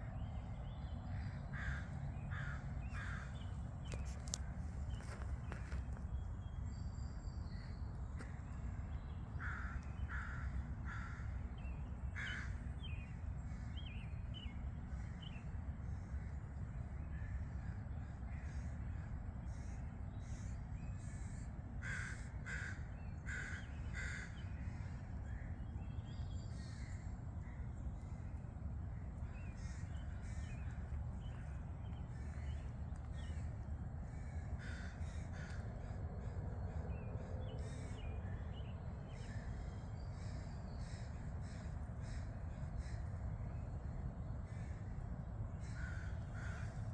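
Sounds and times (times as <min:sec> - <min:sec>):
crows cawing: 0:01.1 - 0:05.8, 0:09.4 - 0:11.4, 0:12.2 - 0:12.6, 0:21.1 - 0:25.5, 0:29.5 - 0:31.5, 0:34.0 - 0:36.3, 0:40.2 - 0:43.0, 0:45.6 - 0:46.9.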